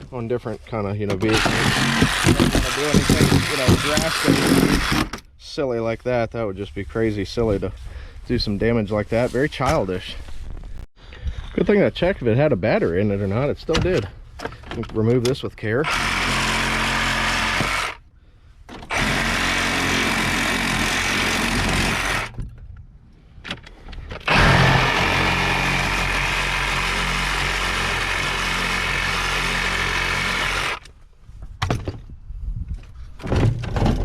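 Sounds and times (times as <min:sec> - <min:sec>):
handheld power tool running: 0:01.3 - 0:05.2, 0:15.8 - 0:18.0, 0:18.9 - 0:22.3, 0:24.3 - 0:30.9.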